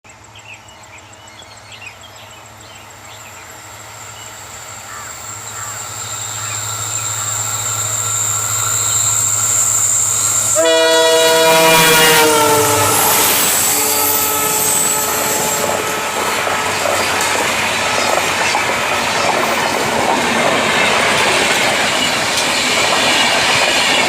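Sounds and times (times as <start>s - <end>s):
train rumbling: 0.2s - 24.0s
multi-tone train horn: 10.3s - 18.0s.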